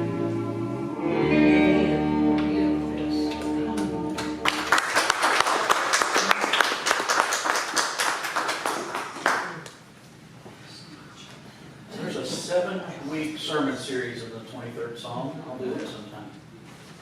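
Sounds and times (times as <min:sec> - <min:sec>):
congregation applause: 0:03.4 - 0:09.8.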